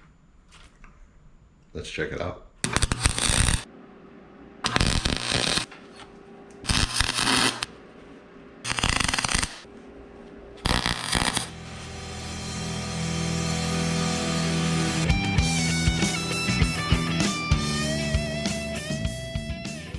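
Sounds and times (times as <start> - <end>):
bursts of work on sheet metal: 2.6 - 3.7, 4.7 - 5.7, 6.6 - 7.7, 8.7 - 9.7, 10.6 - 15.0
guitar music: 11.2 - 19.9.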